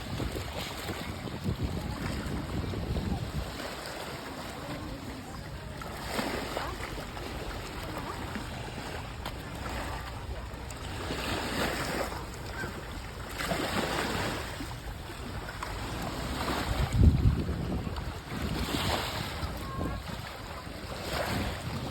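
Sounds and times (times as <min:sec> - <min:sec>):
wind on microphone: 0:00.0 - 0:04.4, 0:15.2 - 0:21.9
sea waves breaking: 0:00.0 - 0:21.9.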